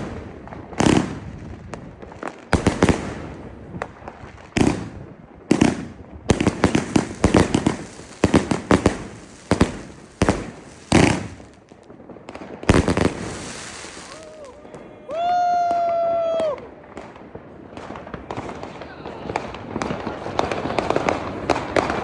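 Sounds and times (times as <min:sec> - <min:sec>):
crackling runs of bangs: 0:00.0 - 0:14.8, 0:16.4 - 0:22.0
firecracker bangs: 0:00.0 - 0:14.8.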